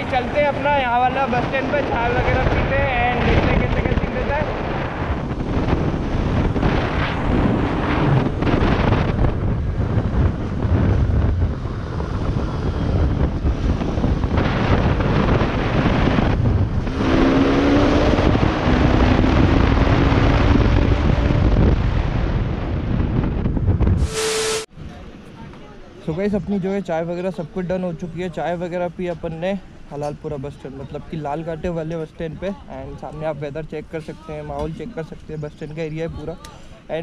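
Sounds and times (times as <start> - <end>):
wind noise on microphone: 0.0 - 25.1.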